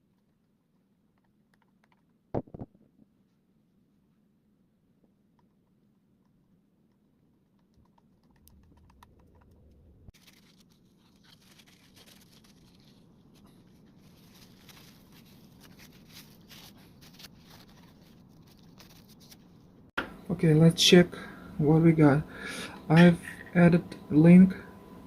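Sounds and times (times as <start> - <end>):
faint clicking and scratching: 0.0 - 2.3, 5.0 - 19.4.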